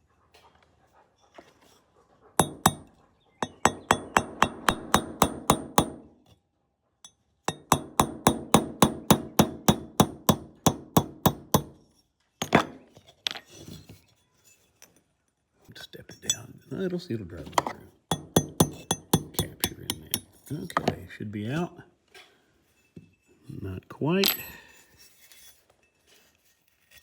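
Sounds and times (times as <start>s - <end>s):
hammer striking metal punch: 2.4s - 6.0s, 7.5s - 11.8s, 12.4s - 12.8s, 17.6s - 20.9s
metal parts clinking: 12.4s - 14.0s, 24.2s - 25.5s.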